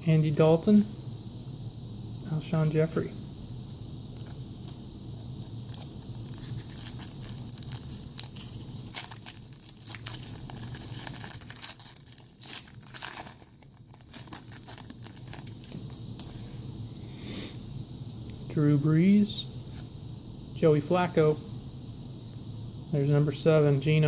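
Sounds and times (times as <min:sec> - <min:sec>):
wrapper tearing and crinkling: 0:05.4 - 0:16.1.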